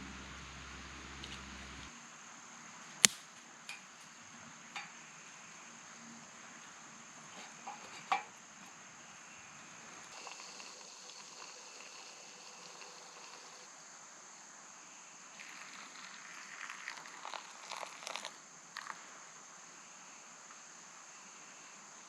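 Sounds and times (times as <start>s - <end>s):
insect chirring: 9.1s - 13.7s, 14.8s - 20.2s.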